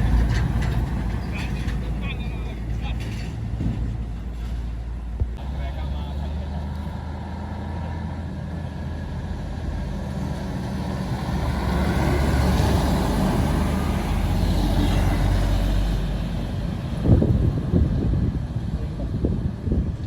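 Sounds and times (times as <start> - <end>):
truck diesel engine under load: 0.0 - 20.0.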